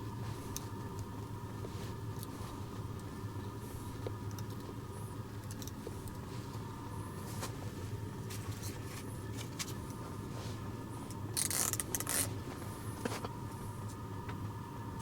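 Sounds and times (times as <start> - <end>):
steady low hum: 0.0 - 15.0
fishing reel clicks: 11.4 - 12.3.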